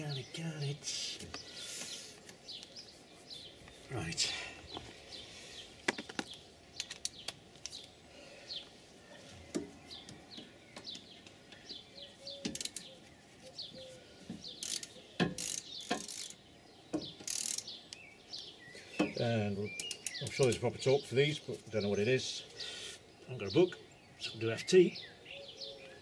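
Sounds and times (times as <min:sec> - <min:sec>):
birds chirping: 0:00.0 - 0:26.0
socket ratchet clicking: 0:12.5 - 0:12.9, 0:14.6 - 0:16.4, 0:17.2 - 0:17.8, 0:19.8 - 0:20.2.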